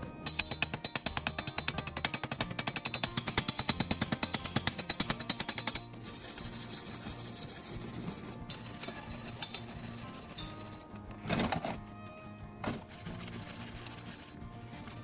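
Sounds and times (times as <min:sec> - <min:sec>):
hammering power tool: 0:00.0 - 0:11.8
loud scrape: 0:00.0 - 0:11.8, 0:12.6 - 0:15.0
tool rasping on metal: 0:00.0 - 0:11.9, 0:12.6 - 0:15.0.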